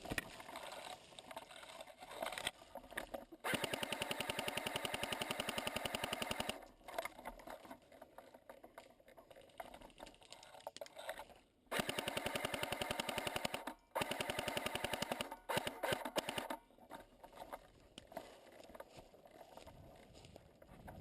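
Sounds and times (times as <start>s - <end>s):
airsoft rifle automatic fire: 3.5s - 6.6s, 11.7s - 16.6s.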